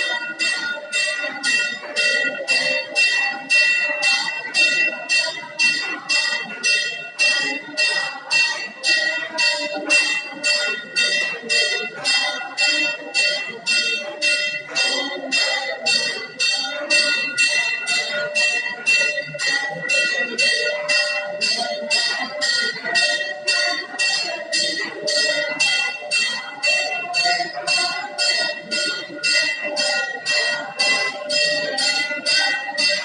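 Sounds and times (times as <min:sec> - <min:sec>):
temple bell ringing: 0:00.0 - 0:33.0
voices: 0:00.0 - 0:33.0.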